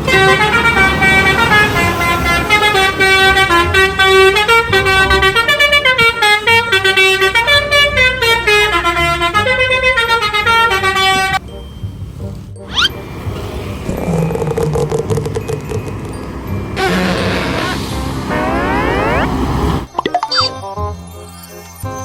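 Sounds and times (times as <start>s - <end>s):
musical bus horn: 0.0s - 11.5s, 15.5s - 19.9s.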